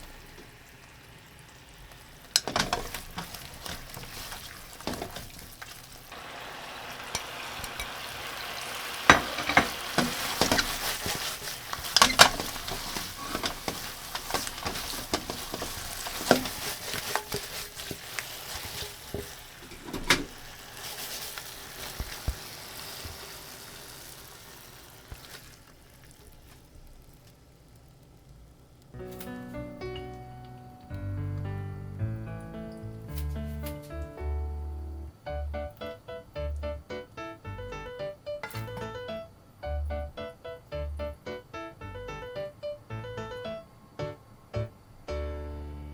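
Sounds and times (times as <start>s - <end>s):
tofu sizzling in a frying pan: 0.0s - 29.0s
utensil clicking against pan: 2.2s - 5.8s, 7.1s - 8.0s, 9.1s - 18.0s.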